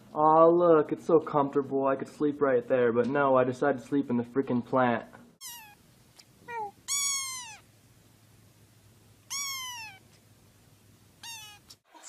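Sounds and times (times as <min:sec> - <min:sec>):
cat meowing: 0:05.4 - 0:05.8, 0:06.5 - 0:07.7, 0:09.3 - 0:10.1, 0:11.2 - 0:11.8.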